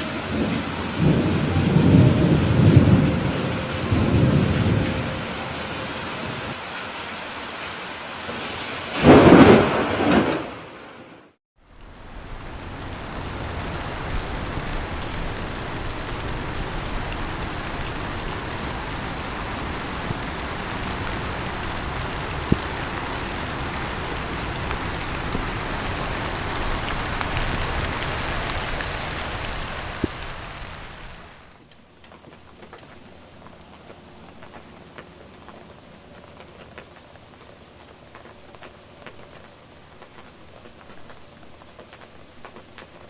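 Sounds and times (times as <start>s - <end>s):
steady rain falling: 0.0s - 43.0s
insect chirping: 11.6s - 31.6s
sharp drips: 11.7s - 31.6s.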